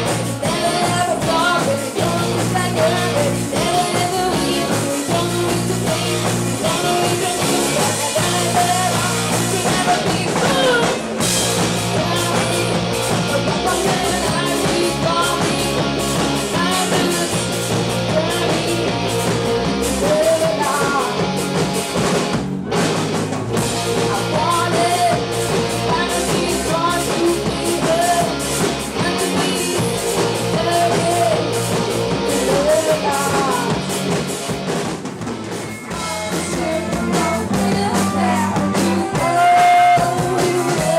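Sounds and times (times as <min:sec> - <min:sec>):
person singing: 0:00.0 - 0:21.3, 0:23.8 - 0:34.0, 0:35.9 - 0:40.9
rock band guitar: 0:00.0 - 0:40.9.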